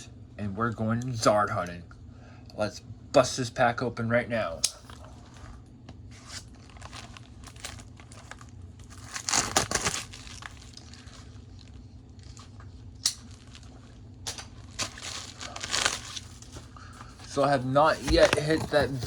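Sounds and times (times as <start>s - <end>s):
foil wrapper crinkling: 6.2s - 19.0s.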